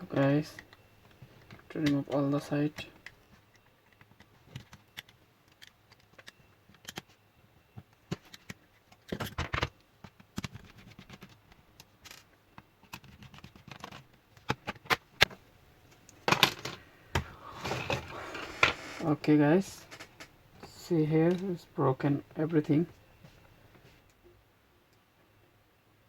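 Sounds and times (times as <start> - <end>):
plastic laptop parts clicking and scraping: 0.5 - 15.4.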